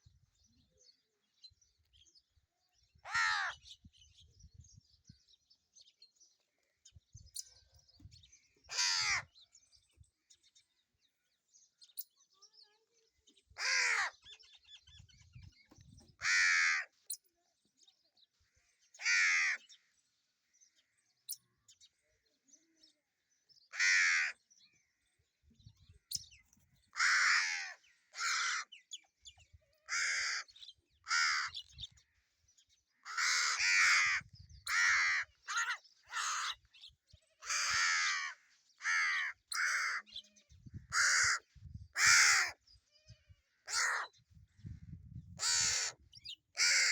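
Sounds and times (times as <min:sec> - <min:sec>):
crows cawing: 0:03.1 - 0:03.6, 0:08.7 - 0:09.3, 0:13.6 - 0:14.2, 0:16.2 - 0:17.0, 0:19.0 - 0:19.6, 0:23.7 - 0:24.4, 0:27.0 - 0:28.7, 0:29.9 - 0:30.5, 0:31.1 - 0:31.6, 0:33.0 - 0:36.6, 0:37.4 - 0:40.1, 0:40.9 - 0:41.4, 0:42.0 - 0:42.6, 0:43.7 - 0:44.1, 0:45.4 - 0:46.0, 0:46.6 - 0:46.9.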